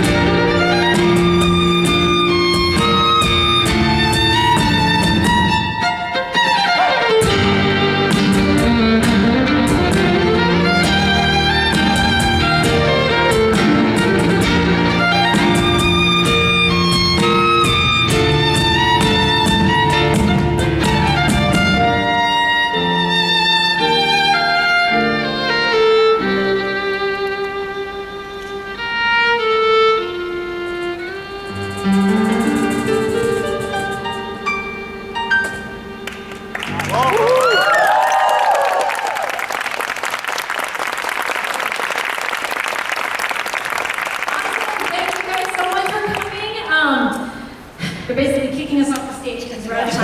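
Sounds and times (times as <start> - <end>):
bass: 0.0 - 5.6, 7.2 - 22.2, 36.5 - 37.6
drum beat: 0.0 - 5.9, 7.2 - 22.1
solo violin melody: 0.0 - 37.6.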